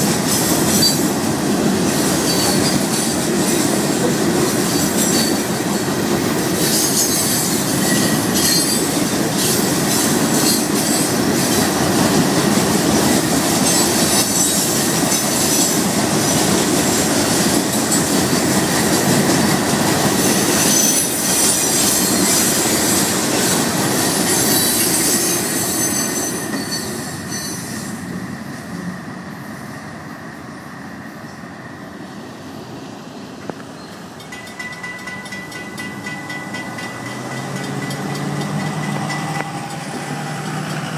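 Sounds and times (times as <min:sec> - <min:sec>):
train wheels squealing: 0:00.0 - 0:01.2, 0:01.9 - 0:06.0, 0:06.6 - 0:32.0, 0:33.7 - 0:40.9
freight train rolling past: 0:00.0 - 0:40.9
wheels clattering over rail joints: 0:33.5 - 0:40.9.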